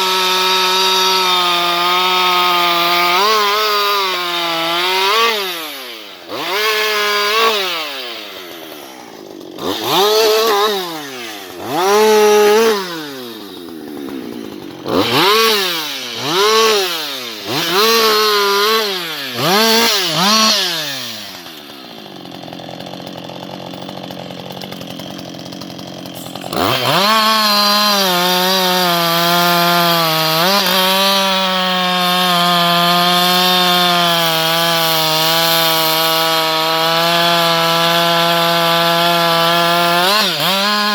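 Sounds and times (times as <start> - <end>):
chainsaw engine revving: 0.0 - 40.9.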